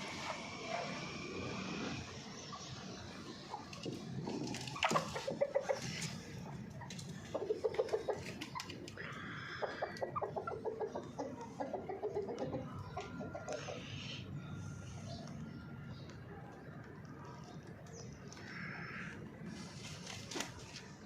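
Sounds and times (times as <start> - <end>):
hens clucking: 2.4 - 14.4.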